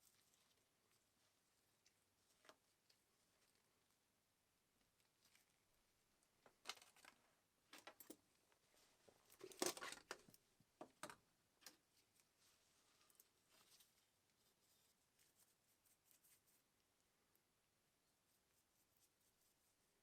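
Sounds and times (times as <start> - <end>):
faint handling clicks and rustles: 4.8 - 16.6.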